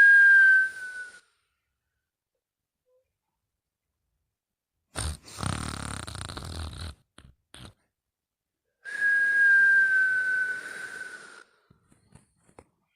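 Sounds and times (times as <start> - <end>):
breath with high whistle: 0.0 - 1.5, 8.9 - 11.7
person snoring: 5.0 - 7.0.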